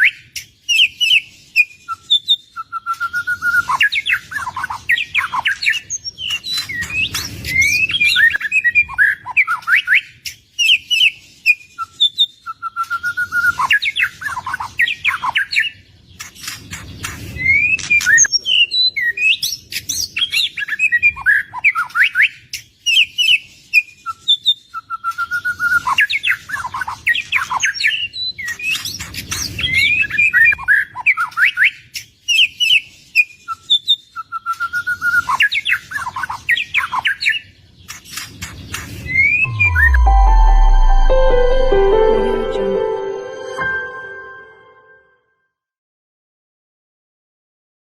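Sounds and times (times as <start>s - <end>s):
songbird singing whistled phrases: 0.0s - 15.7s, 29.6s - 37.5s.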